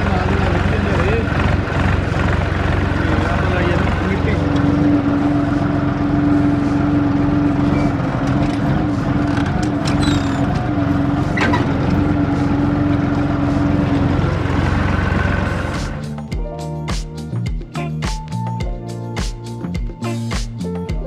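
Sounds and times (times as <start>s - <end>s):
music: 0.0s - 1.4s, 2.9s - 21.0s
tractor engine running: 0.0s - 16.4s.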